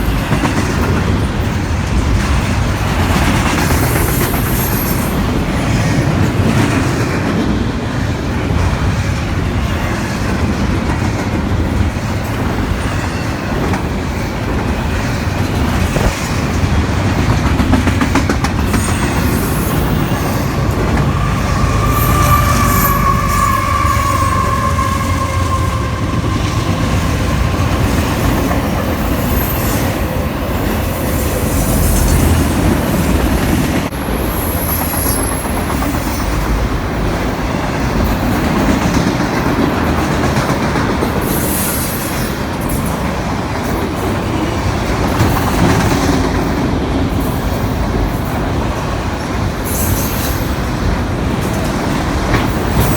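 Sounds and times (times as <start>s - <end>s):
clickety-clack over rail joints: 0.0s - 21.8s, 26.4s - 52.9s
freight train wheel rumble: 0.0s - 52.9s
wheels squealing on rail: 2.8s - 6.7s, 18.6s - 36.6s, 41.1s - 43.0s, 47.1s - 52.9s.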